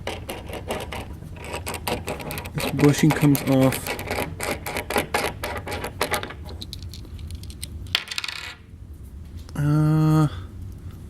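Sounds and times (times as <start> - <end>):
steel parts clinking and rattling: 0.0 - 8.5
person speaking: 2.3 - 4.3.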